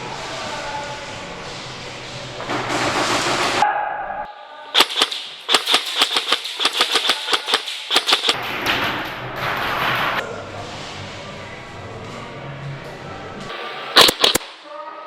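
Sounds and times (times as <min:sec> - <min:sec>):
airsoft gun shots: 0:04.8 - 0:08.5, 0:14.0 - 0:14.6.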